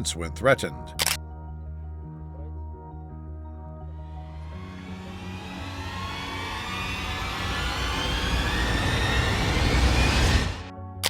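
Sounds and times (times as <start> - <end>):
background music steady notes: 0.0 - 8.4
rushing noise: 4.2 - 10.7.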